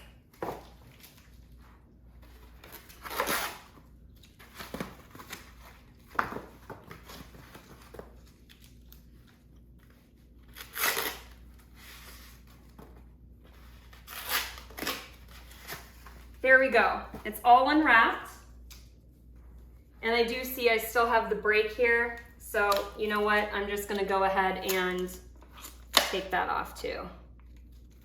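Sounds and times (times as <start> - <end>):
rustling and handling noise: 0.0 - 25.9
tape peeling and tearing: 2.4 - 6.0, 6.9 - 12.1, 13.8 - 16.0.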